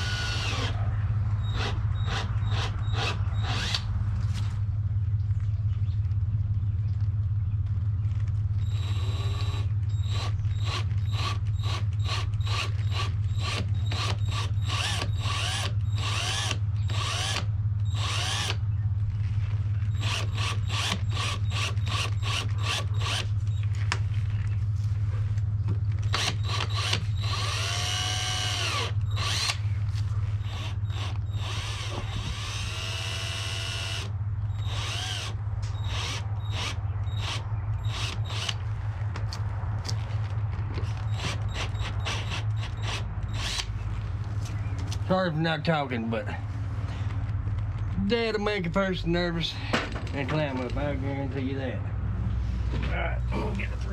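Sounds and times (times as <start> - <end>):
power drill bursts: 0.0 - 0.8, 1.4 - 3.9, 8.6 - 18.6, 19.9 - 23.7, 26.1 - 29.6, 30.4 - 38.6, 41.1 - 43.7
steady low hum: 0.0 - 53.9.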